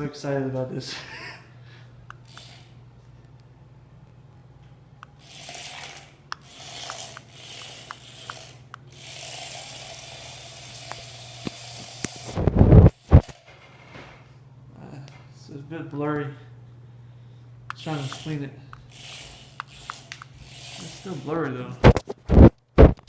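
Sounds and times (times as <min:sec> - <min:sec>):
steady low hum: 0:00.0 - 0:23.0
toy vehicle motor hissing: 0:02.3 - 0:02.7, 0:05.2 - 0:12.4, 0:17.8 - 0:21.4
small clicks: 0:05.0 - 0:08.8, 0:17.7 - 0:20.9.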